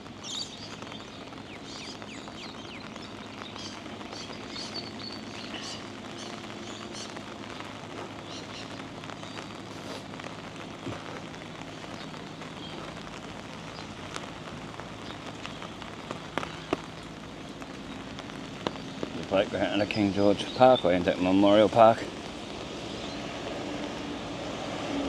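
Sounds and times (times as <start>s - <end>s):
steady rain falling: 0.0s - 25.0s
birds chirping: 0.1s - 23.4s.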